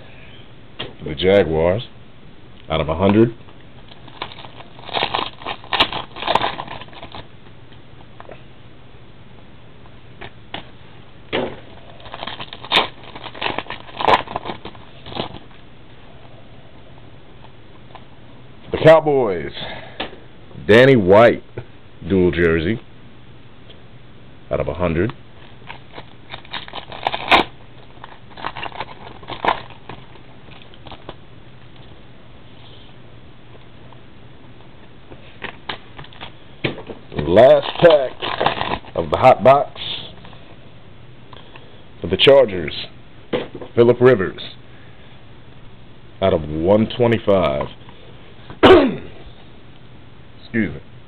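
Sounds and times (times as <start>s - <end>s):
cards and wrappers crackling: 3.8s - 7.3s, 11.7s - 15.6s, 25.4s - 31.2s, 37.1s - 40.4s.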